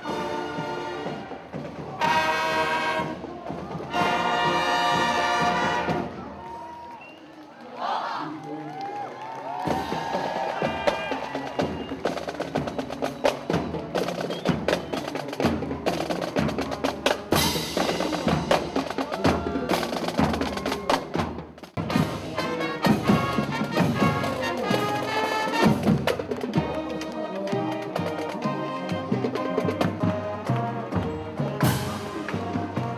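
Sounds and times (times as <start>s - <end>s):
brass: 0.0s - 6.5s, 9.7s - 32.9s
marching band playing: 0.0s - 7.0s, 9.5s - 32.9s
snare drum rolls: 9.6s - 26.6s.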